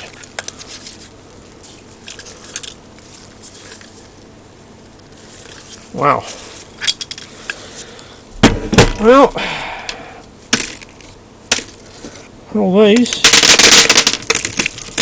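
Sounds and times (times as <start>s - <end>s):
rusty parts clicking and rustling: 1.6s - 4.0s, 6.6s - 7.6s.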